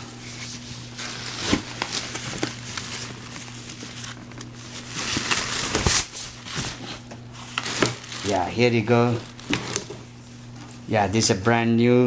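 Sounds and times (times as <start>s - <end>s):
low steady hum: 0.0s - 12.0s
packaging rustling and crinkling: 0.3s - 11.0s.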